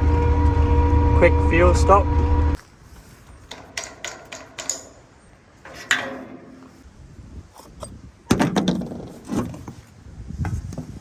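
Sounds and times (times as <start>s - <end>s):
metal parts clicking and knocking: 3.5s - 6.8s.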